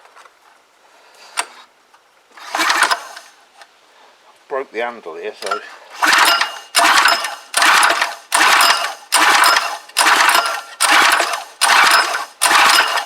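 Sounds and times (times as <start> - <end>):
engine turning over: 2.4 - 3.3, 5.4 - 13.0
engine pull-starter pulls: 2.4 - 3.4, 5.4 - 13.0.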